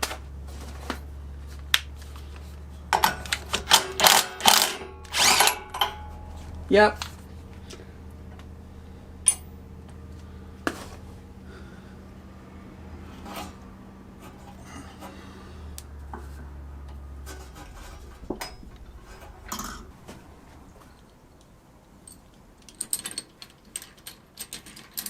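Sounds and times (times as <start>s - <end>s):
low steady hum: 0.0s - 25.0s
metal tools clinking and scraping: 2.2s - 8.4s, 9.1s - 9.6s, 13.0s - 15.5s, 16.1s - 25.0s.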